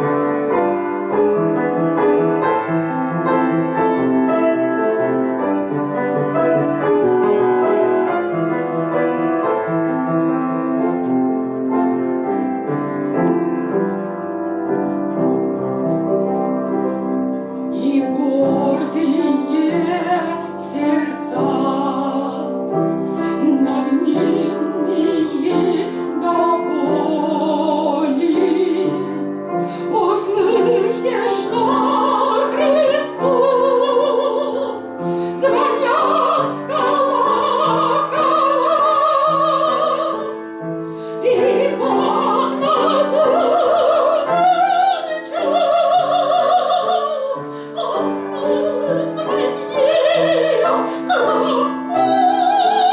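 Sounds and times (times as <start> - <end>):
piano accompaniment: 0.0 - 52.9
woman singing operatically: 17.8 - 22.5, 23.3 - 29.2, 29.8 - 40.4, 41.2 - 52.9.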